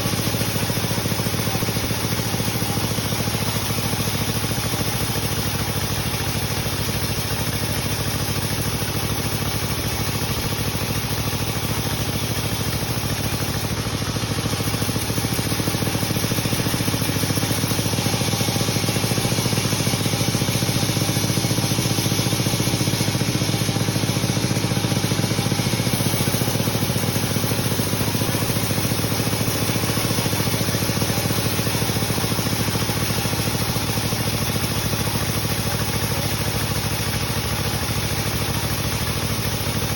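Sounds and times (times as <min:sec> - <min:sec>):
sawmill machinery hum: 0:00.0 - 0:39.9
sawing hiss: 0:07.8 - 0:36.1.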